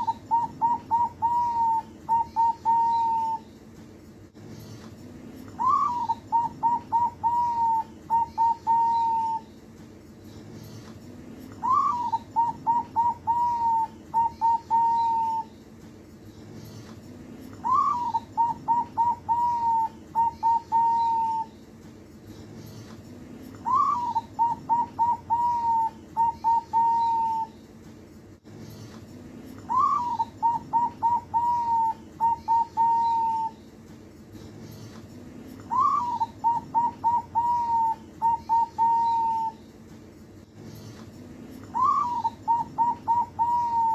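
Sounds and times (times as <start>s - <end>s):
dove cooing: 0.0s - 3.4s, 5.5s - 9.5s, 11.6s - 15.5s, 17.6s - 21.5s, 23.6s - 27.6s, 29.6s - 33.6s, 35.6s - 39.6s, 41.7s - 43.9s.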